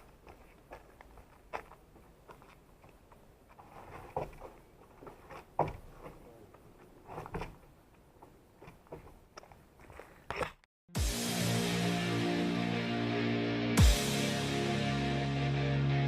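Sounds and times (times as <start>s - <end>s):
footsteps and scuffs: 0.0s - 10.6s.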